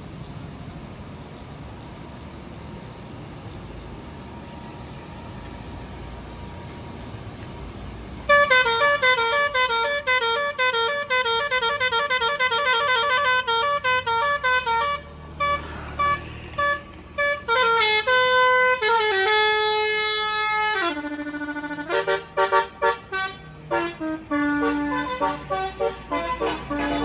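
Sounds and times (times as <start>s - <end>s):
bus musical horn melody: 8.2s - 27.0s.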